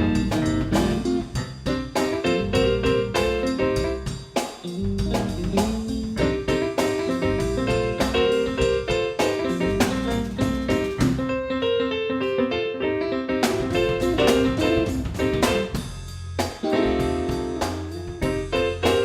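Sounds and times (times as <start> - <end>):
keyboard chords: 0.0 - 19.0
rhythm and blues band playing: 0.0 - 19.0.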